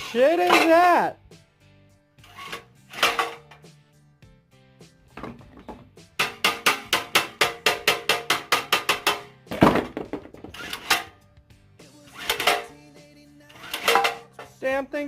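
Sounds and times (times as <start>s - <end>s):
background music: 0.0s - 15.0s
heavy knocks: 5.1s - 7.6s, 9.5s - 10.6s.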